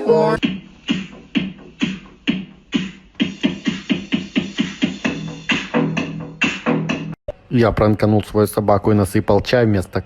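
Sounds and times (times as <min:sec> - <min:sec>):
electronic music with sharp beat: 0:00.0 - 0:07.2.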